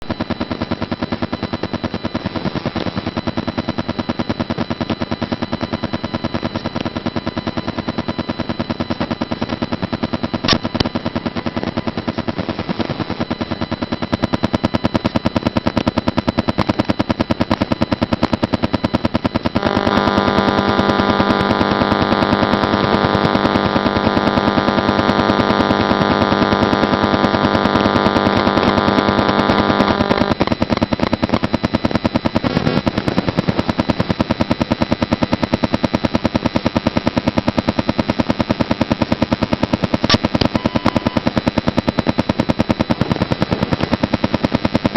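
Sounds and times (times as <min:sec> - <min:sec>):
rapid interference ticking: 0:00.0 - 0:44.9
loud rough buzz: 0:17.4 - 0:31.5.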